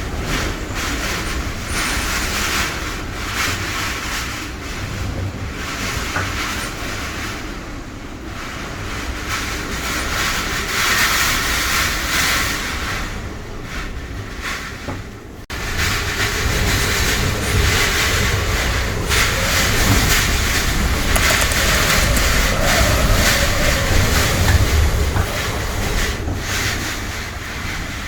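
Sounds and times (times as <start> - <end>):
strong wind gusting: 15.7 - 28.0.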